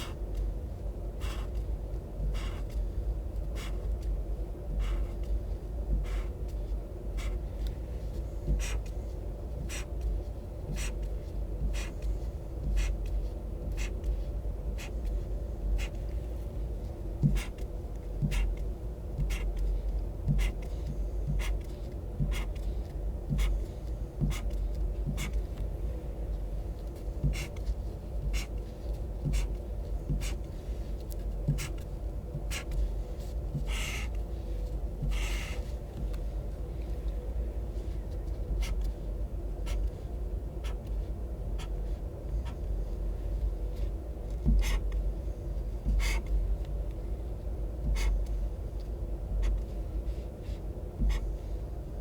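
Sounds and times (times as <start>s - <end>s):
highlighter scratching on paper: 0.0s - 0.2s, 1.2s - 1.7s, 2.3s - 2.8s, 3.5s - 4.0s, 4.8s - 5.4s, 6.0s - 6.4s, 7.2s - 7.7s, 8.5s - 16.3s, 17.2s - 18.6s, 19.2s - 25.5s, 27.2s - 30.8s, 31.4s - 34.2s, 35.0s - 36.2s, 38.5s - 38.9s, 39.6s - 40.0s, 40.6s - 41.0s, 41.6s - 42.7s, 43.8s - 45.1s, 45.8s - 46.4s, 47.8s - 48.3s, 49.4s - 51.5s
steady low hum: 0.0s - 52.0s
felt tip pen on paper: 8.6s - 8.9s, 10.8s - 11.0s, 17.3s - 17.6s.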